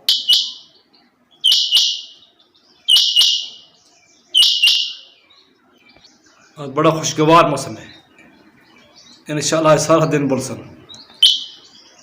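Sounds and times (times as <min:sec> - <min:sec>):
quail calling: 0:00.0 - 0:05.6, 0:10.9 - 0:12.0.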